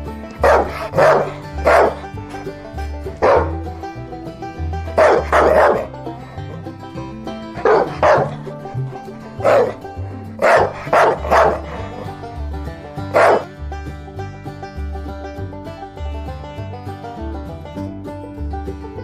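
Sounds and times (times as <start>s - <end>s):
background music with bass line: 0.0s - 19.0s
dog barking: 0.3s - 2.5s, 3.2s - 3.7s, 4.9s - 6.0s, 7.6s - 12.2s, 13.1s - 13.5s.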